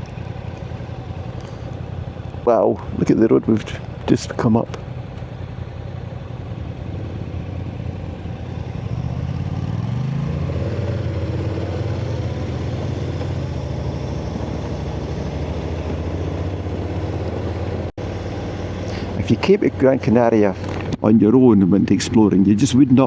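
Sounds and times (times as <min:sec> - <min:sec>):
motorcycle engine running: 0:00.0 - 0:21.0.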